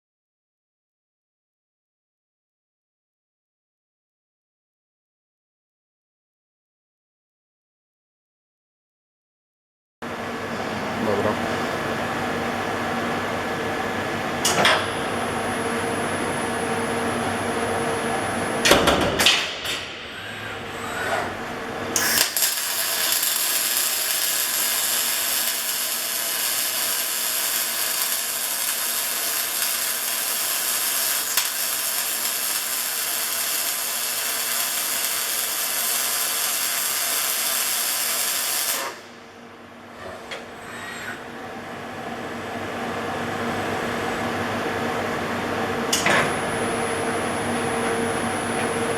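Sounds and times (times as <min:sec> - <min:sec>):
machine hum: 0:10.0 - 0:30.8, 0:39.4 - 0:48.9
welding arc hissing: 0:20.1 - 0:39.1.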